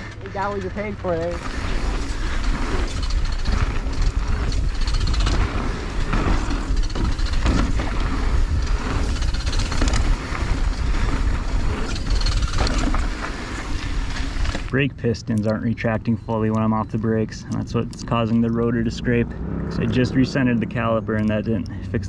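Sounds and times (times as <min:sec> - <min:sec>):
bike knocks and rattles: 0:00.0 - 0:14.7
wind buffeting microphone: 0:00.0 - 0:14.7
tyres rumbling on dirt: 0:00.0 - 0:22.0.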